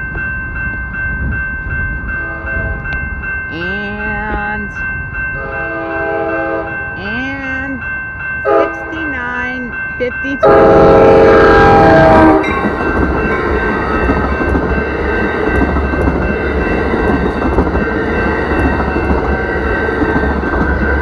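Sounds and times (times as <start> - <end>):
train rumble and wheel clatter: 0.0 - 21.0
train horn blast: 2.2 - 2.8, 5.4 - 6.8, 8.5 - 8.9, 10.4 - 12.5.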